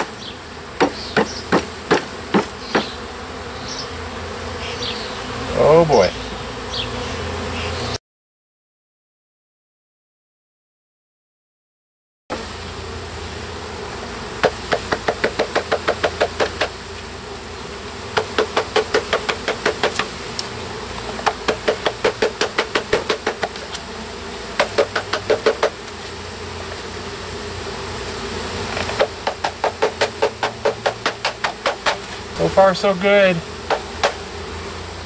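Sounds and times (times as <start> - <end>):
bee swarm buzzing: 0.0 - 8.0, 12.3 - 35.0
rapid knocks on bee package: 0.8 - 3.0, 14.4 - 17.1, 18.1 - 26.1, 28.7 - 32.3, 33.6 - 34.4.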